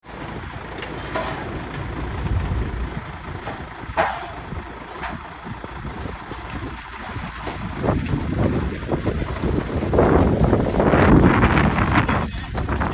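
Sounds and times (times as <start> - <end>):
heavy equipment engine rumble: 0.0 - 12.9
metal knocks and clank: 0.8 - 10.4.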